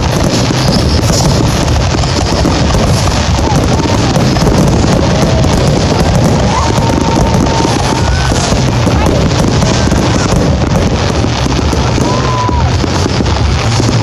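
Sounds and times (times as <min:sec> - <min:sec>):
firework whistling tones: 0:00.0 - 0:14.0
fireworks crackling: 0:00.0 - 0:14.0
low rumble: 0:00.0 - 0:14.0.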